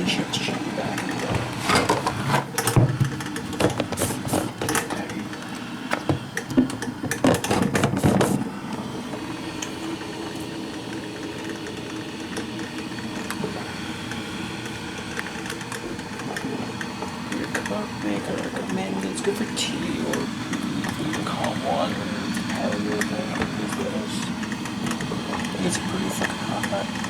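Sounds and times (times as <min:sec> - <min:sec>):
coffee maker hum and hiss: 0:00.0 - 0:27.0
handling clicks and knocks: 0:00.8 - 0:08.4.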